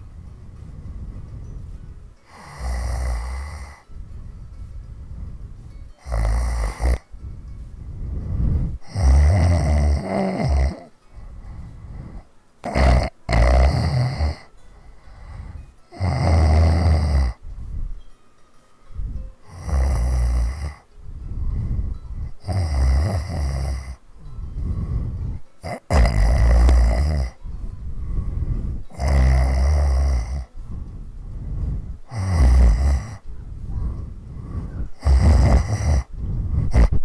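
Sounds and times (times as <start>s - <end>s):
quiet breathing: 0.0s - 37.0s
woman snoring: 2.2s - 3.9s, 6.0s - 7.1s, 8.7s - 11.0s, 11.9s - 14.5s, 15.1s - 17.4s, 19.4s - 20.9s, 22.2s - 24.0s, 24.8s - 27.4s, 28.8s - 30.5s, 31.8s - 37.0s.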